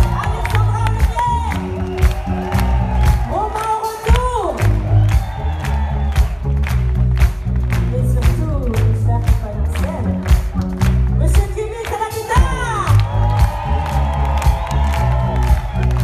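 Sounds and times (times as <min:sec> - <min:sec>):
pop-soul band playing live: 0:00.0 - 0:16.0
steady drum beat: 0:00.0 - 0:16.0
woman singing: 0:03.3 - 0:04.8, 0:08.0 - 0:10.3, 0:11.2 - 0:13.0
heavy bass line: 0:04.2 - 0:11.7, 0:12.4 - 0:16.0.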